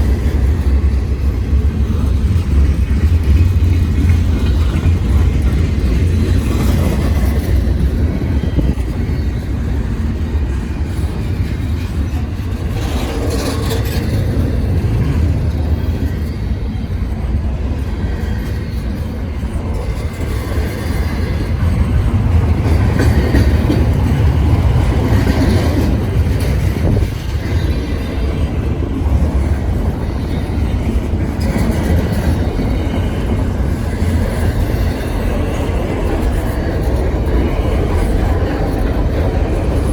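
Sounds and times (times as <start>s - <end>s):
freight train rumbling past: 0.0s - 39.9s
train knocks: 20.5s - 39.9s.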